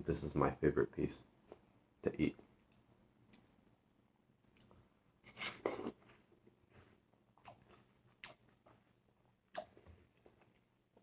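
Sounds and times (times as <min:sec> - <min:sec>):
chewing smacks: 0:07.4 - 0:08.8, 0:09.5 - 0:11.0.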